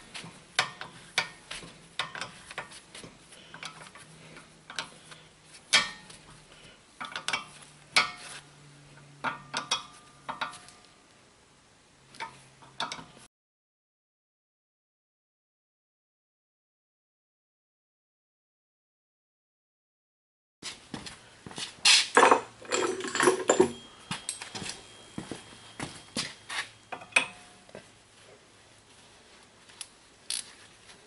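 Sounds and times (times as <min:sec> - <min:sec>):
hand tools clinking on metal: 0:22.2 - 0:27.5.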